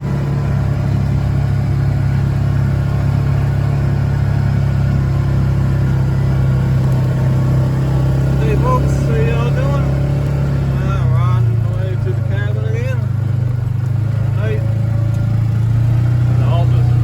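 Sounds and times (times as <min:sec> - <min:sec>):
steady engine drone: 0:00.0 - 0:17.0.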